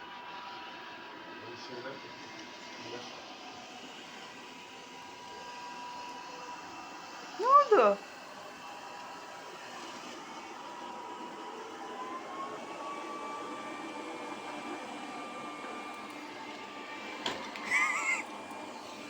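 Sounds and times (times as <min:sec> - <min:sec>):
robot vacuum motor whirring: 0:11.0 - 0:19.0.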